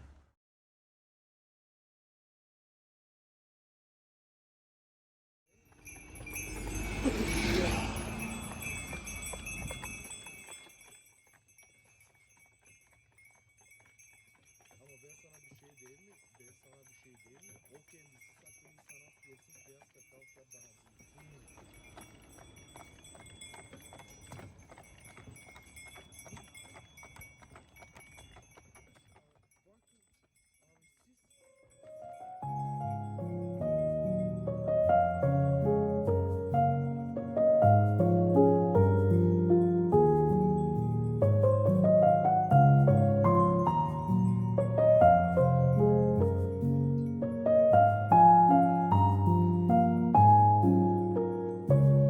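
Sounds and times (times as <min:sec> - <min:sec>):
harness bells jingling: 0:05.6 - 0:52.0
carriage rumble: 0:05.7 - 0:29.8
soft hoofbeats: 0:05.7 - 0:35.1, 0:42.5 - 0:52.0.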